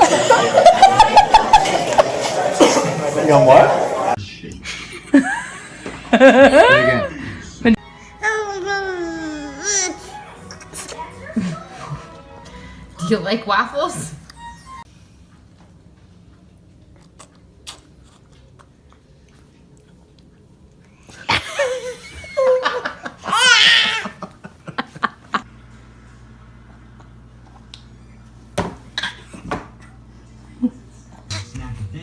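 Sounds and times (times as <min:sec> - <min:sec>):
baby giggling: 0:08.2 - 0:10.8, 0:23.2 - 0:24.2.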